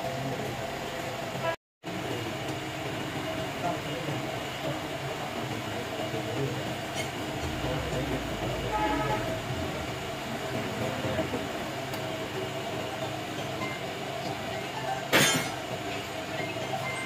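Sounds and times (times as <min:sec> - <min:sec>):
steady mechanical rumble: 0:03.8 - 0:13.0.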